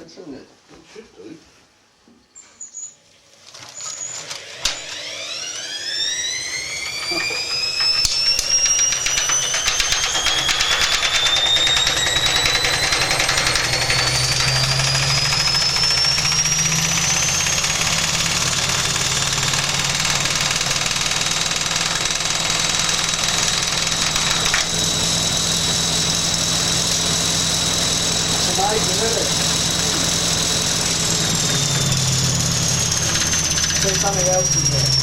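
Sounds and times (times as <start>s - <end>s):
washing machine spinning: 4.4s - 35.0s
drum rattling: 8.4s - 35.0s.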